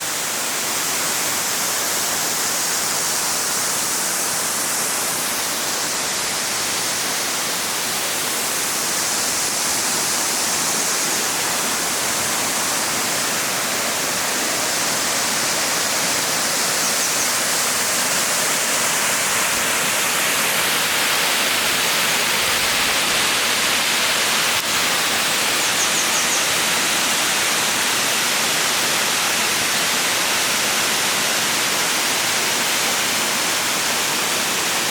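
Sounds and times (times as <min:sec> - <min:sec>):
waterfall rushing: 0:00.0 - 0:34.9.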